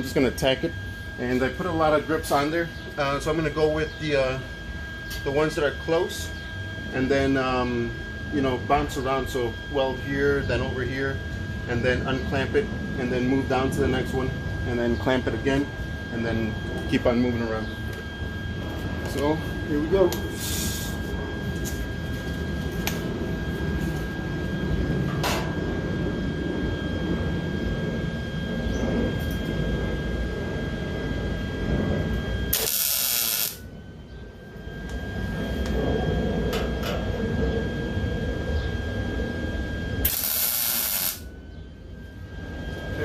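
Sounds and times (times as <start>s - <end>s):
welder crackling buzz: 19.0s - 24.3s, 32.0s - 33.7s, 40.0s - 41.3s.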